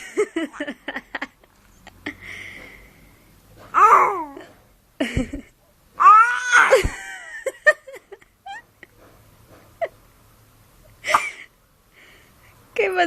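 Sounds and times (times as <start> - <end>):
baby cooing and squealing: 3.8 - 4.5, 6.0 - 6.9.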